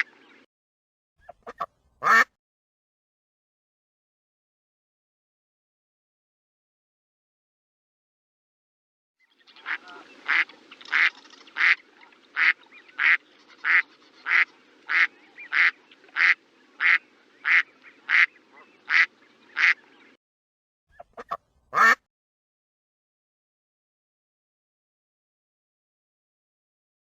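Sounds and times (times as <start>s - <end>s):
duck quacking: 1.2s - 2.3s, 9.6s - 19.8s, 20.9s - 22.1s.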